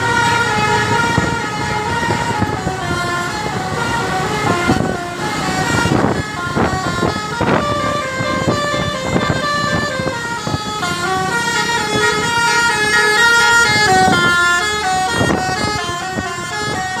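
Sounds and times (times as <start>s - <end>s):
multi-tone air horn melody: 0.0s - 17.0s.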